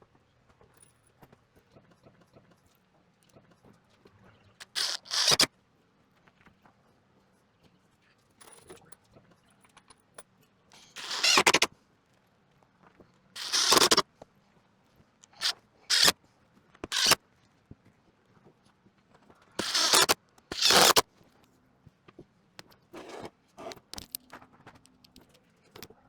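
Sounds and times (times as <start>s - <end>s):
power tool bursts: 4.6s - 5.5s, 11.0s - 11.7s, 13.4s - 14.0s, 15.4s - 16.1s, 16.8s - 17.2s, 19.6s - 21.0s.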